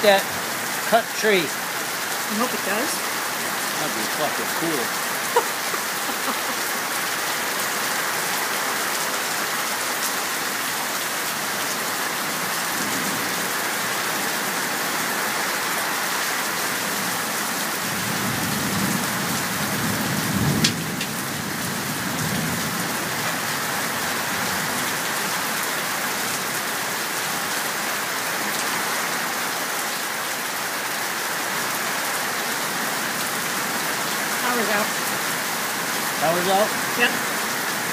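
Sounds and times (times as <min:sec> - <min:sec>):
heavy rain falling: 0:00.0 - 0:37.9
thunder rumbling with sharp crack: 0:20.0 - 0:21.1.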